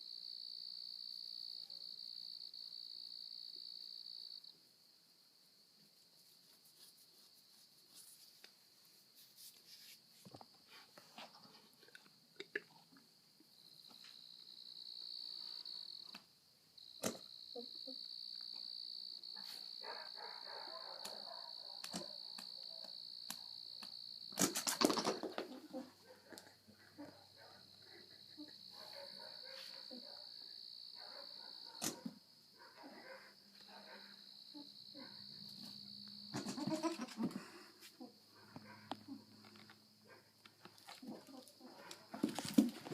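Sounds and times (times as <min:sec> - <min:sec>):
insects buzzing: 0:13.5 - 0:37.2.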